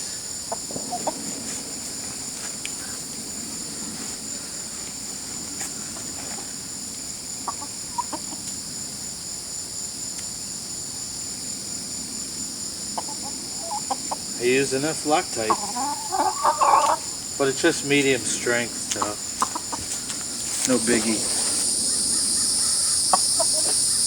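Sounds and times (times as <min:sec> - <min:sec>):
high-pitched insect drone: 0:13.1 - 0:24.0.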